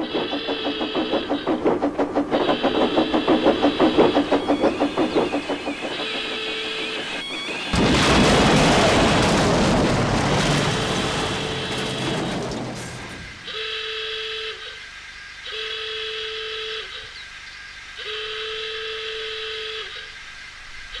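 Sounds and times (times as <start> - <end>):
steam hissing: 0.0 - 9.2.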